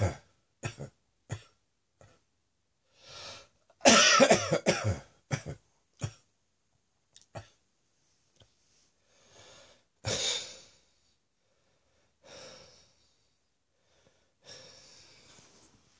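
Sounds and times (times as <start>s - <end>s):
man breathing: 2.9s - 3.6s, 8.9s - 15.7s.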